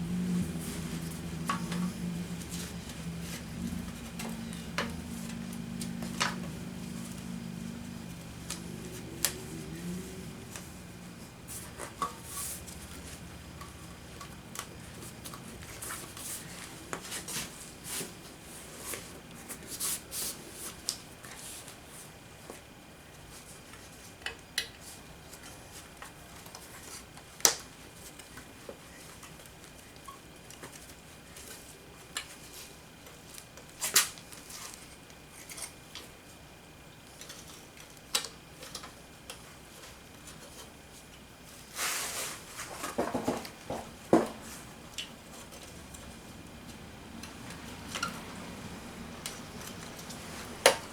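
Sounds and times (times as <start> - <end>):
soft rustling: 0.0 - 21.7.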